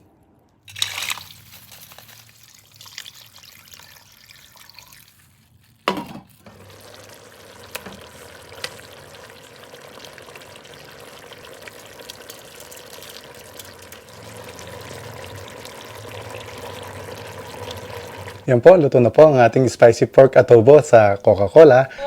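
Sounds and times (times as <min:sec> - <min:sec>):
sauce simmering hiss: 0:06.4 - 0:19.9.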